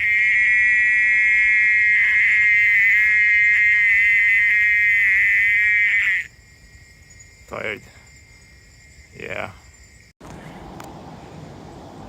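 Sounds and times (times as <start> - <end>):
high buzzing animal call: 0.0 - 6.3.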